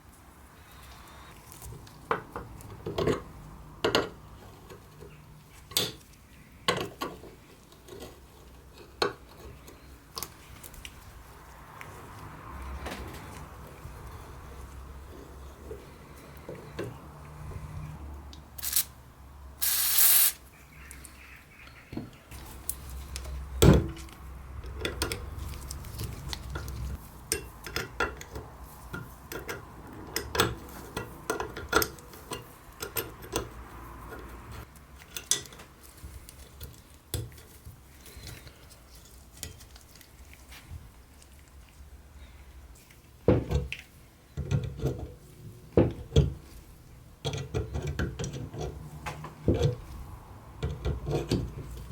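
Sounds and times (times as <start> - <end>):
short hiss: 18.6 - 18.9, 19.6 - 20.4
small metal parts clinking: 18.6 - 18.9.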